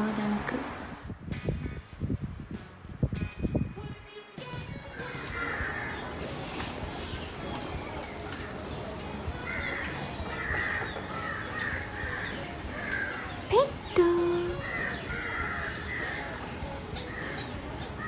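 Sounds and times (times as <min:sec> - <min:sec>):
steady outdoor hiss: 0:04.8 - 0:18.0
crows cawing: 0:05.2 - 0:06.8, 0:08.1 - 0:13.5, 0:14.6 - 0:18.0.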